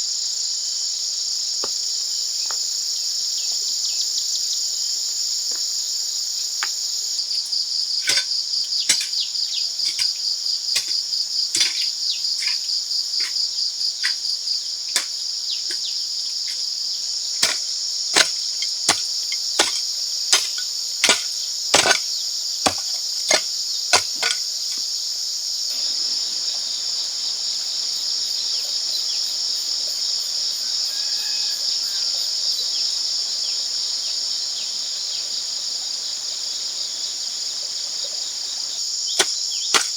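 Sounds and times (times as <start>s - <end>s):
insect chorus: 0.0s - 39.9s
sharp knocks: 8.1s - 8.3s, 11.6s - 12.6s, 19.6s - 19.8s, 20.4s - 22.0s, 22.7s - 23.4s, 24.0s - 24.4s.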